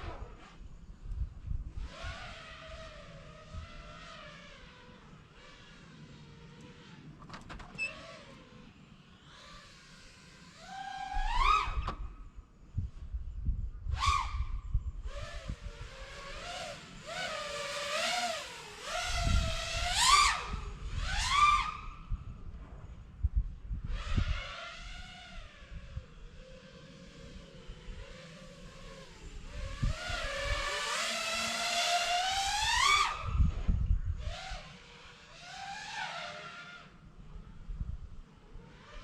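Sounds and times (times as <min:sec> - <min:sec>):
wind noise rumbling: 0:00.0 - 0:04.9, 0:11.2 - 0:34.7
quadcopter motors whining: 0:00.0 - 0:39.0.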